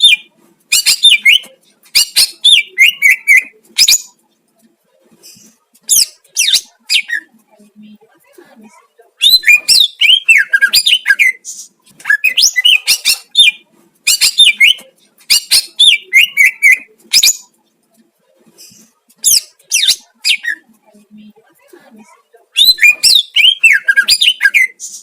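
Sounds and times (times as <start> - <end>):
bird singing whistled phrases: 22.6 - 24.8.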